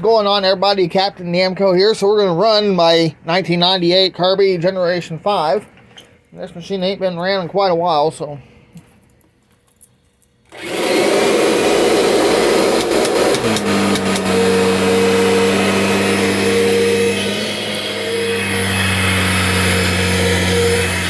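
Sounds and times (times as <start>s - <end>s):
vacuum cleaner running: 10.5s - 21.0s.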